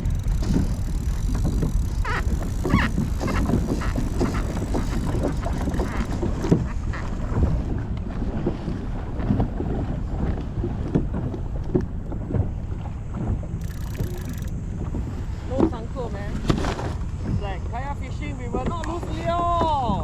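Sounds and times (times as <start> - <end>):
water slapping against kayak hull: 0.0 - 12.4
wind buffeting microphone: 0.0 - 18.8.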